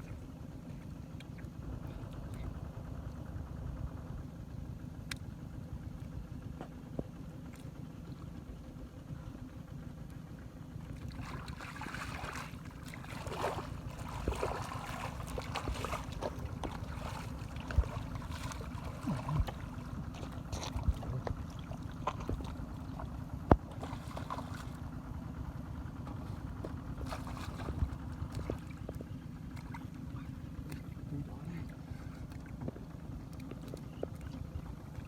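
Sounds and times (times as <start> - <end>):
steady low rumble: 0.0 - 35.0
muddy water splashing: 10.9 - 35.0.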